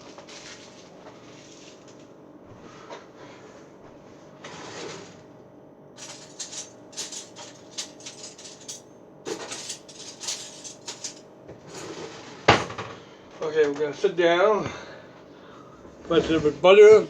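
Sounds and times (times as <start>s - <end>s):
cutlery and dishes clinking: 6.0s - 12.8s.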